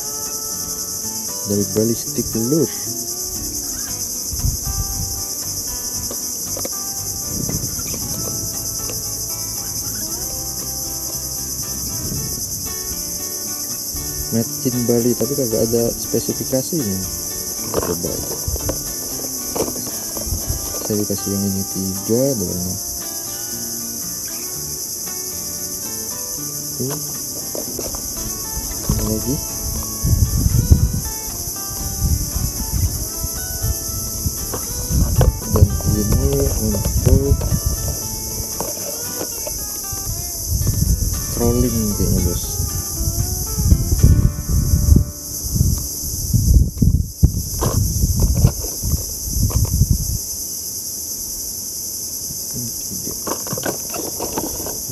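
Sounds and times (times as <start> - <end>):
insects buzzing: 0.0 - 54.9
handling bumps and rustles: 53.0 - 54.9.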